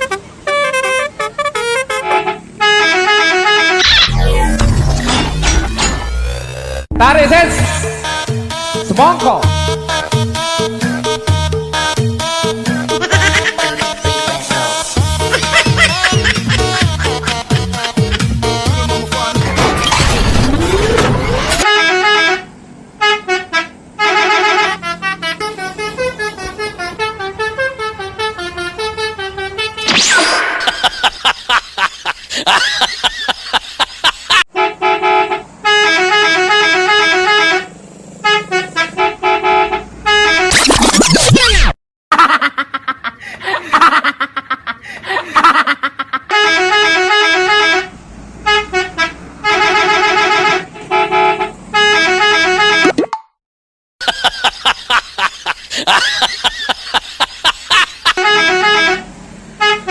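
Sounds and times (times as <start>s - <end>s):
multi-tone bus horn melody: 0.0s - 4.6s, 6.2s - 19.6s, 21.5s - 30.0s, 34.5s - 40.6s, 46.2s - 53.0s, 58.0s - 59.9s.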